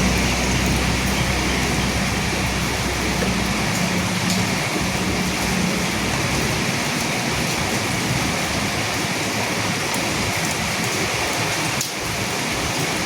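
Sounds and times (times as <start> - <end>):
low rumble: 0.0 - 6.8
steady rain falling: 0.0 - 13.0.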